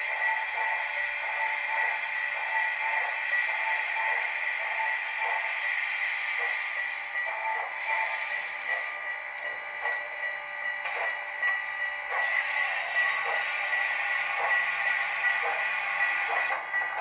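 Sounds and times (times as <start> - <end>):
constant steam hiss: 0.0 - 17.0
model steam locomotive chuffing: 0.0 - 17.0.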